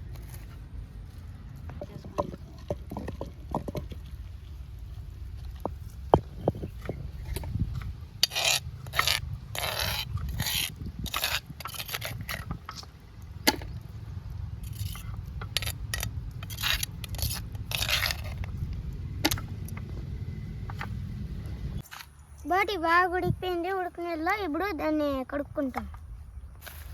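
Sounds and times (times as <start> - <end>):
scraping rasps: 0.0 - 14.0, 14.6 - 22.1
low rumble: 0.0 - 21.8.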